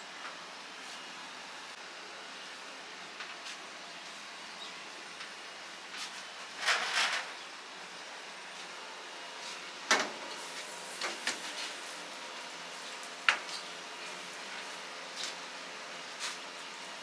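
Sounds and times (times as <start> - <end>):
grill utensil scraping: 5.9 - 7.4, 9.4 - 15.4.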